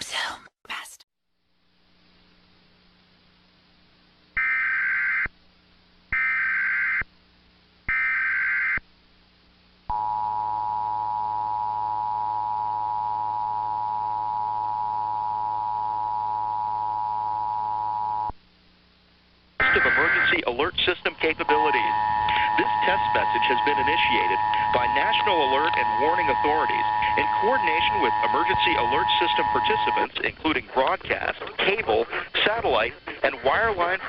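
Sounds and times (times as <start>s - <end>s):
faint low hum: 1.5s - 4.4s, 8.8s - 34.0s
two-tone attention signal: 19.6s - 20.4s, 21.5s - 30.1s
buzzing data tone bursts: 19.6s - 30.2s.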